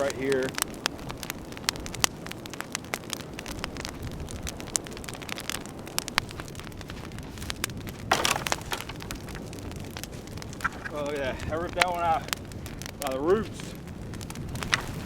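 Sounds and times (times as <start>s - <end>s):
wood fire crackling and popping: 0.0s - 15.0s
rustle: 12.3s - 15.0s.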